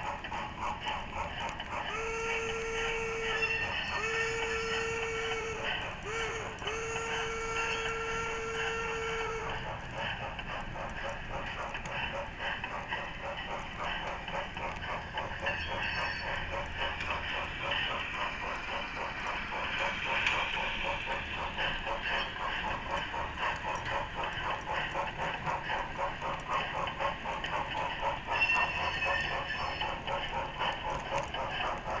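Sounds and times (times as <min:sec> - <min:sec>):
model train clicking on track: 0:00.0 - 0:32.0
high ringing tone: 0:03.3 - 0:04.9, 0:15.5 - 0:16.4.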